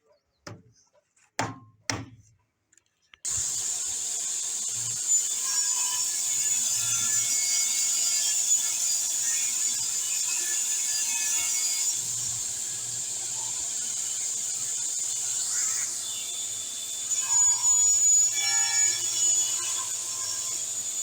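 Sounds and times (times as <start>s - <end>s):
table saw whining: 3.3s - 21.0s.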